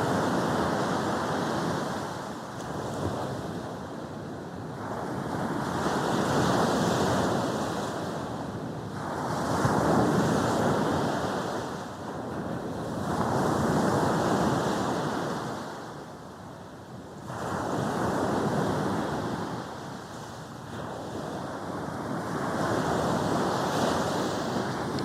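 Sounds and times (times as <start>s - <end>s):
sea waves breaking on beach: 4.6s - 16.2s, 17.2s - 25.0s.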